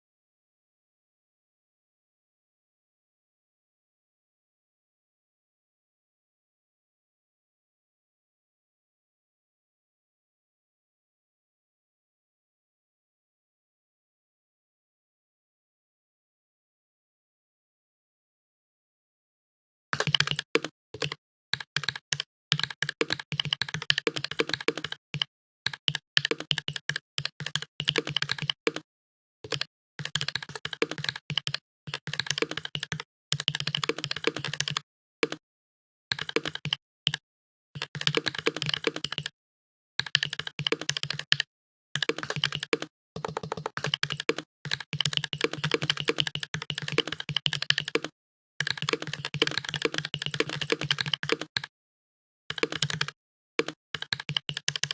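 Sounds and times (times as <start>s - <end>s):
fast keyboard typing: 20.0s - 28.8s, 29.5s - 35.4s, 36.1s - 37.2s, 37.8s - 39.4s, 40.0s - 51.7s, 52.5s - 54.9s.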